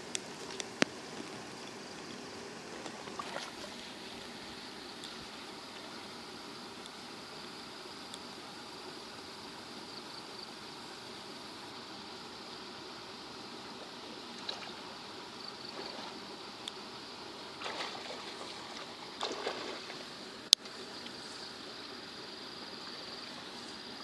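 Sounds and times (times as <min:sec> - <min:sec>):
water splashing: 0:00.0 - 0:06.0, 0:17.5 - 0:20.2
faint insect buzz: 0:00.0 - 0:24.0
outdoor hiss: 0:00.0 - 0:24.0.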